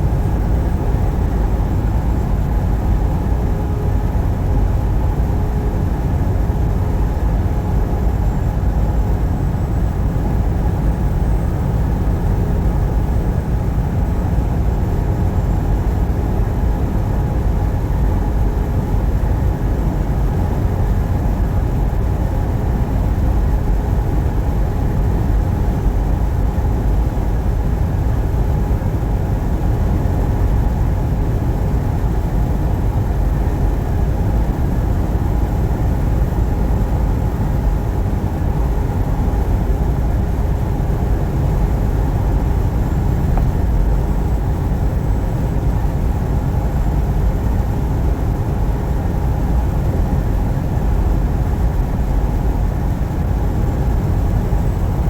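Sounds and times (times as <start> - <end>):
truck engine and road noise: 28.2 - 48.7.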